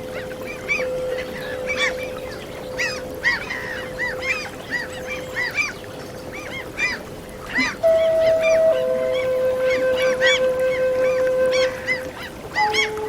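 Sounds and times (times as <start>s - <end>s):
gulls calling: 0.0s - 13.0s
held flute note: 7.8s - 13.0s.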